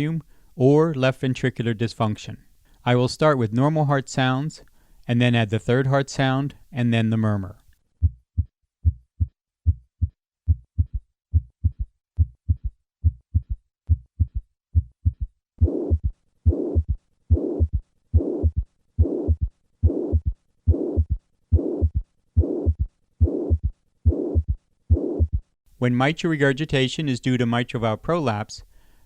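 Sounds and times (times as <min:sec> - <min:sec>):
low third heart sound: 0:08.0 - 0:25.5
rushing heart murmur: 0:08.0 - 0:25.5
heartbeat: 0:08.0 - 0:25.6.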